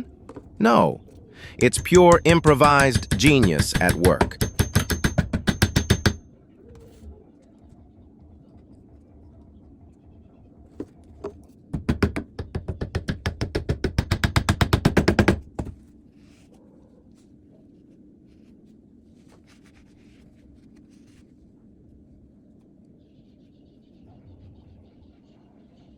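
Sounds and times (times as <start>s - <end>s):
sharp knocks: 1.4s - 6.2s, 11.8s - 15.8s.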